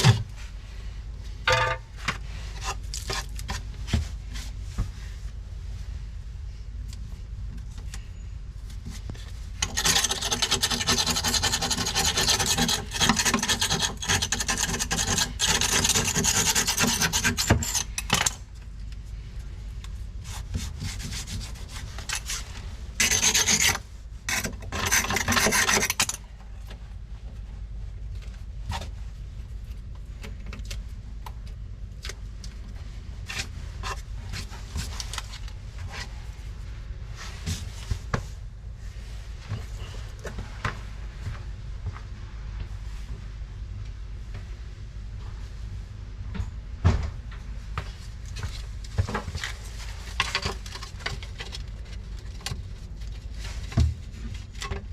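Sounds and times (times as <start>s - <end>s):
rasping strokes on hard surface: 9.6s - 17.9s, 20.5s - 26.2s.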